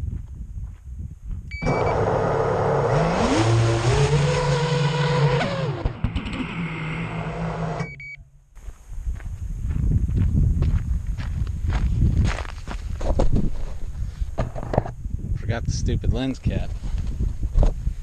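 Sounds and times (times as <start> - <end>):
drone propellers whirring: 1.5 - 8.2
footsteps on gravel: 8.6 - 13.9.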